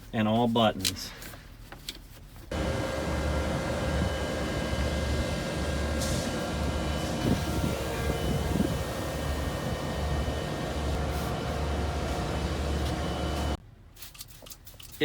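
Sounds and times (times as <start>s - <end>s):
truck engine idling: 2.5s - 13.6s.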